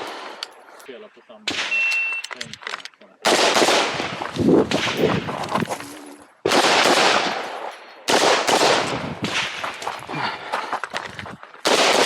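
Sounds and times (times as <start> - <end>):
rifle shots echoing: 1.4 - 1.9, 3.2 - 5.3, 6.4 - 9.7, 11.6 - 12.0.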